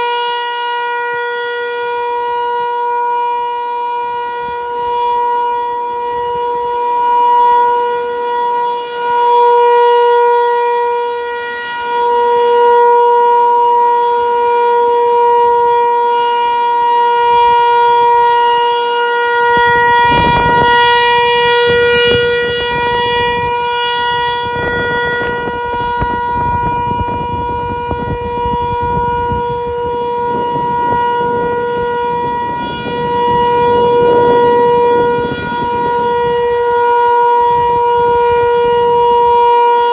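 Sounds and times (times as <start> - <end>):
rotating warning siren: 0.0 - 39.9.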